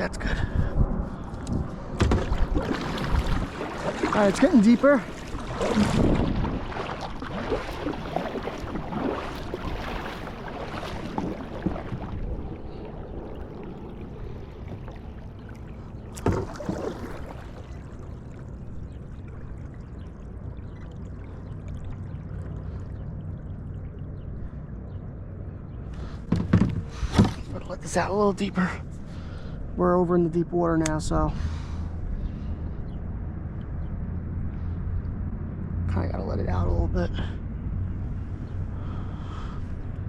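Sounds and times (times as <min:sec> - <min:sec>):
water washing along a hull: 0:00.9 - 0:25.0
paddle strokes splashing water: 0:02.0 - 0:24.2.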